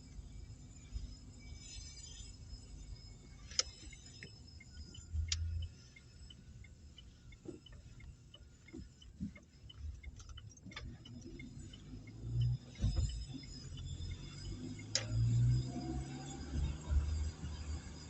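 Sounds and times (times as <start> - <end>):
light even ticking: 3.4 - 15.6.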